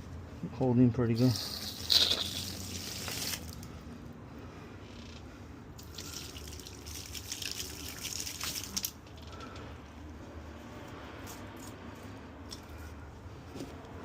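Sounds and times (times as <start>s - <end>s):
water dripping and spattering: 1.4s - 3.6s, 5.8s - 9.0s.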